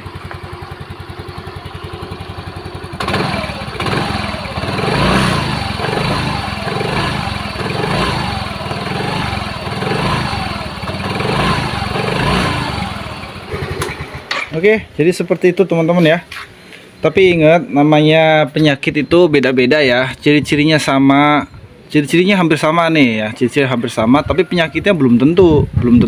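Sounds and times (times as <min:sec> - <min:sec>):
scooter engine idling and revving: 0:00.0 - 0:14.5.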